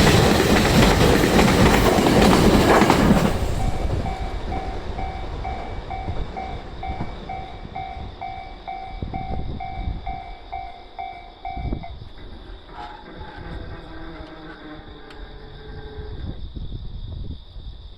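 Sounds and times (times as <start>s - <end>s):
train wheel knocks: 0.0s - 15.2s
freight train rumble: 0.0s - 17.9s
level-crossing alarm two-tone: 3.5s - 12.1s.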